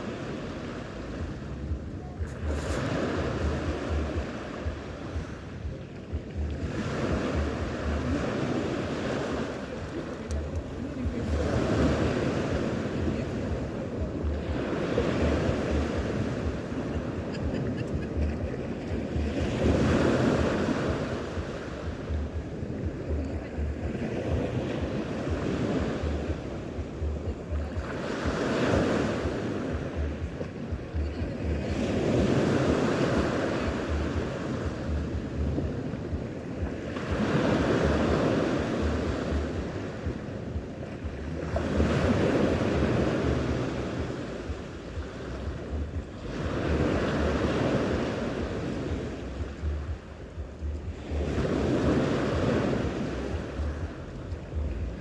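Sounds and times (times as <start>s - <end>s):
sea waves washing onto shore: 0.0s - 55.0s
wind buffeting the microphone: 0.0s - 55.0s.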